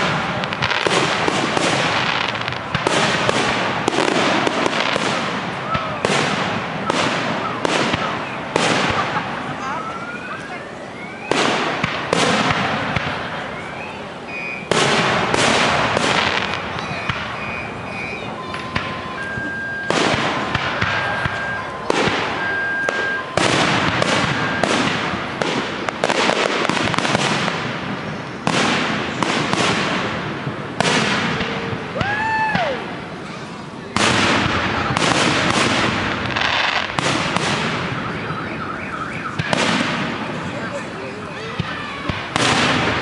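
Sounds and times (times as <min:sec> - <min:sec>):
fireworks bursting: 0:00.0 - 0:43.0
high steady whistling tones: 0:09.6 - 0:11.4, 0:13.3 - 0:14.7, 0:16.4 - 0:23.6, 0:24.2 - 0:24.8.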